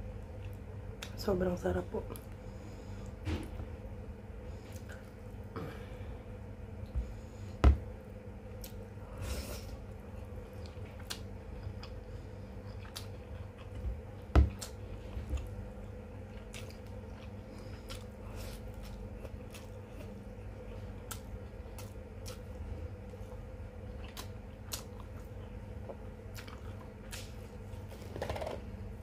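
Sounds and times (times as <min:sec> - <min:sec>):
close chewing and eating: 0:00.0 - 0:01.2, 0:08.5 - 0:28.0
faint steady hum: 0:00.0 - 0:29.0.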